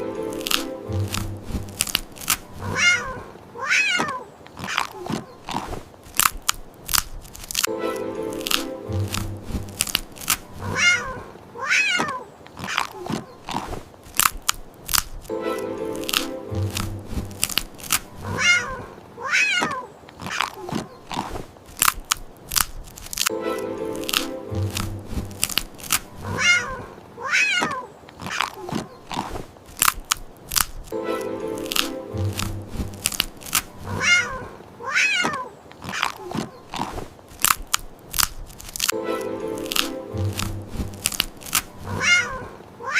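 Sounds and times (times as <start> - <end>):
background music: 0.0 - 2.3, 7.7 - 10.4, 15.3 - 17.9, 23.3 - 25.9, 30.9 - 33.8, 38.9 - 41.9
cat crunching hard candy: 0.3 - 3.2, 4.0 - 7.7, 8.3 - 11.2, 12.0 - 15.3, 16.0 - 18.8, 19.6 - 23.3, 24.0 - 26.8, 27.6 - 34.5, 35.2 - 42.5
cat meowing: 2.6 - 4.8, 10.6 - 12.8, 18.2 - 19.9, 26.2 - 28.4, 33.9 - 35.6, 41.9 - 42.9.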